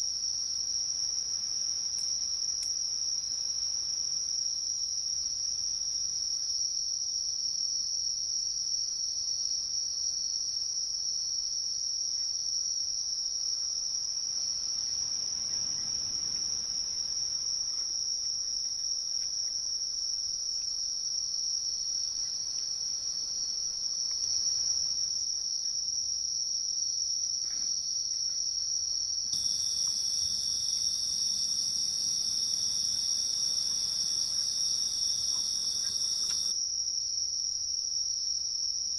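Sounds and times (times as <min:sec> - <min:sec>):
insects trilling: 0:29.4 - 0:36.6.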